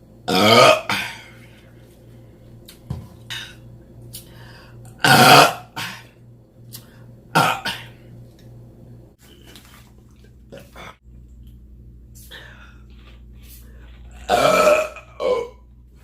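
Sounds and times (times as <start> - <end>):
person burping loudly: 0.3 - 1.4, 5.0 - 6.1, 7.3 - 8.0, 14.1 - 15.7.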